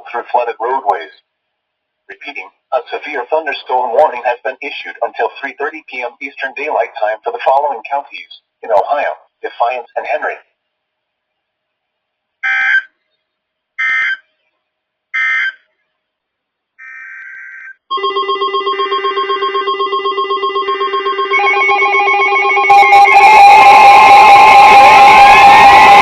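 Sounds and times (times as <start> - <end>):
pulsing electronic alarm: 16.8 - 26.0.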